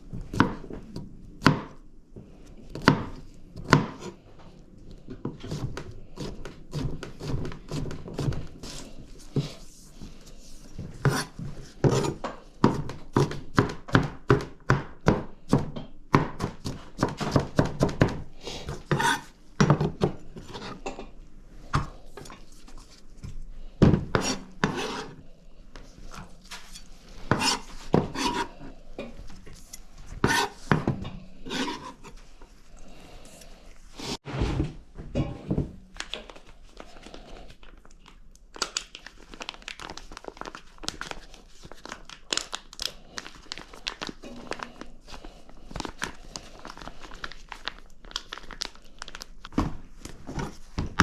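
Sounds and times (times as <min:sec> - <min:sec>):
packaging crinkling and rustling: 0:35.9 - 0:51.0.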